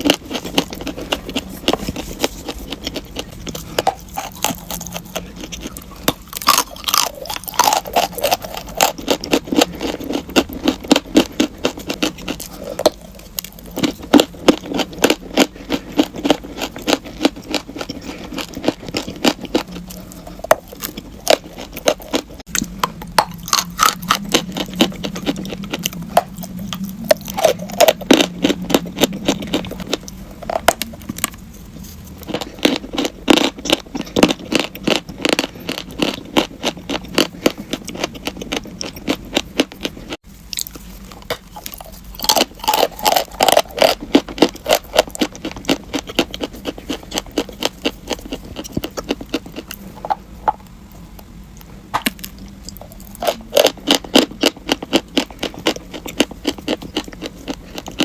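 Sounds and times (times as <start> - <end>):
chalk being chewed: 0.0 - 22.2.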